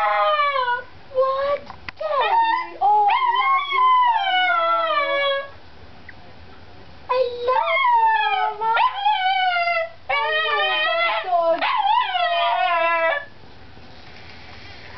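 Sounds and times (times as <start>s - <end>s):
small dog howling: 2.0s - 5.5s, 7.1s - 13.3s.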